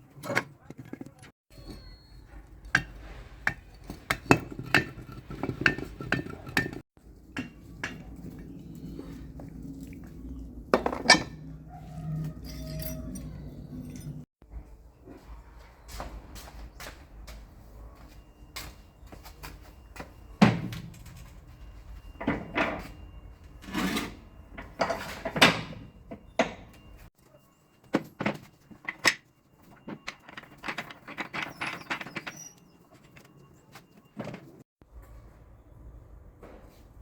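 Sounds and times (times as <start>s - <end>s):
tools knocking and clanking: 0.2s - 8.6s, 10.7s - 11.5s, 24.6s - 27.0s, 27.9s - 33.3s.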